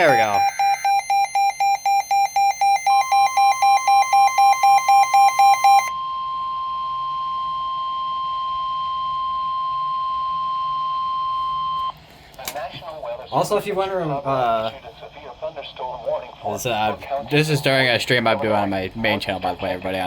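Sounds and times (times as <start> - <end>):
rapid electronic beeping: 0.0 - 5.9
steady high alarm tone: 0.0 - 11.9.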